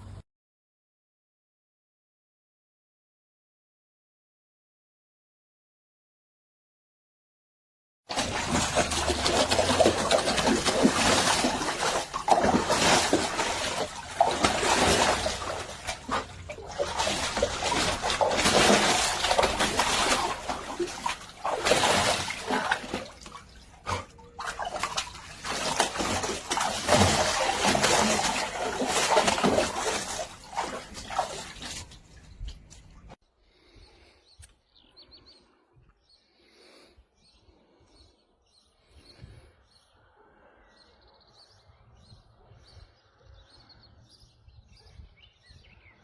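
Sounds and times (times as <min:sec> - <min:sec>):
water splashing and sloshing: 0:08.1 - 0:33.2.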